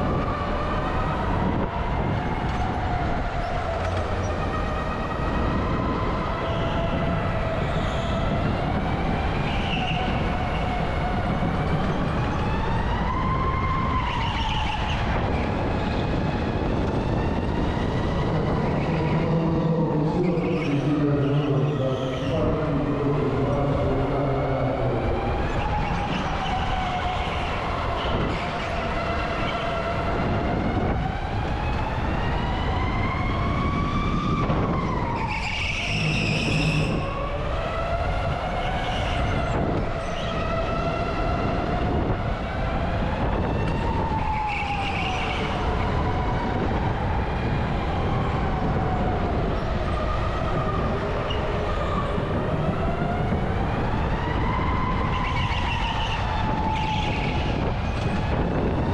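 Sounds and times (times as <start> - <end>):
wind: 0.0 - 58.9
high squeal: 35.2 - 37.1.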